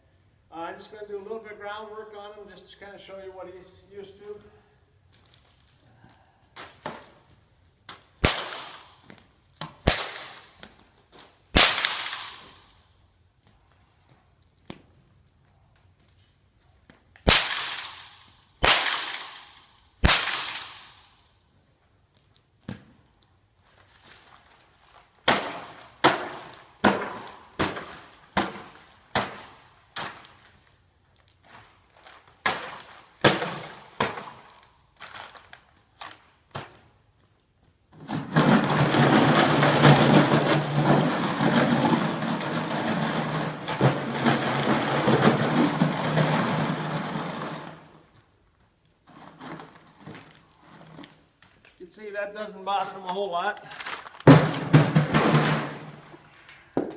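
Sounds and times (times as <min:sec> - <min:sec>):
whip cracking: 0:08.2 - 0:10.7, 0:11.5 - 0:12.7, 0:17.2 - 0:21.1.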